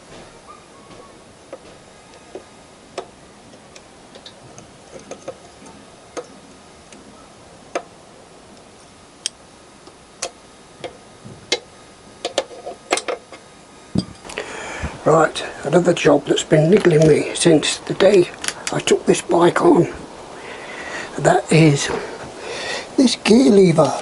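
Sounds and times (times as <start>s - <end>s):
clicks and metallic taps of tools: 12.2s - 13.3s.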